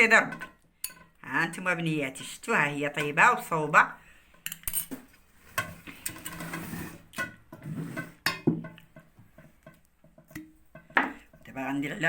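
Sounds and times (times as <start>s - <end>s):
kitchen utensils knocking and scraping: 0.0s - 1.2s, 4.4s - 12.0s.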